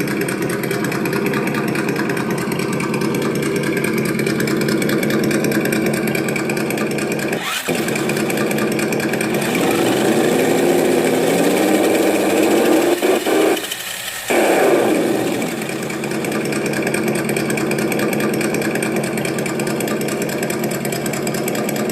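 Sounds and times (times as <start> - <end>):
simulated engine sound revving: 0.0 - 20.7.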